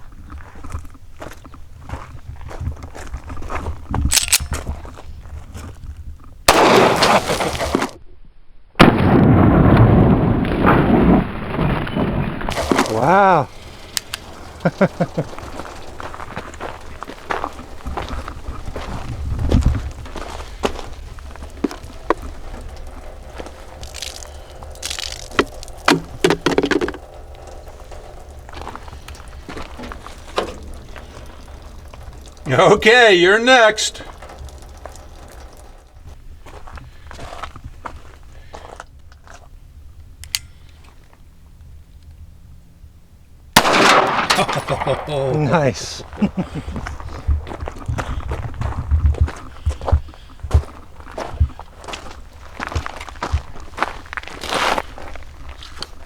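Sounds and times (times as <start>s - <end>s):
light handling clicks: 4.1s - 4.5s, 40.2s - 40.9s
pistol shot: 6.5s - 7.6s, 43.6s - 45.1s
wind rumble on microphone: 13.5s - 25.9s, 46.0s - 53.8s.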